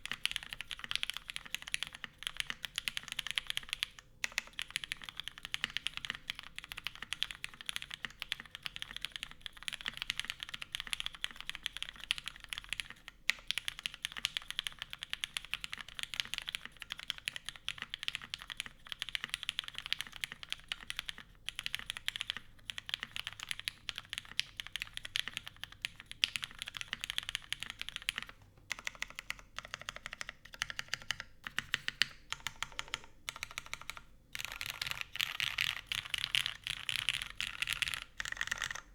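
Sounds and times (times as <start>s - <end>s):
typing on mechanical keyboard: 0.0s - 38.9s.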